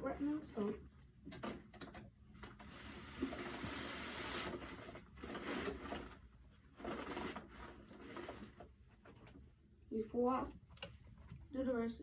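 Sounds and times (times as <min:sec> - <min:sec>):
rustling and scraping handling noise: 0:00.0 - 0:09.5.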